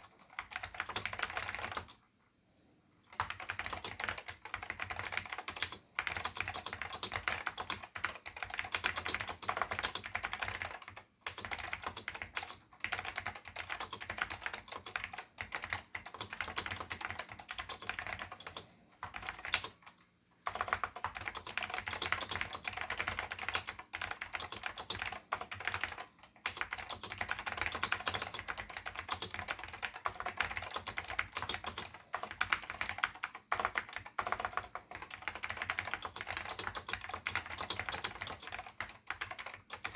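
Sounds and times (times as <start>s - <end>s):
keyboard typing clacks: 0.0s - 2.0s, 3.1s - 39.9s.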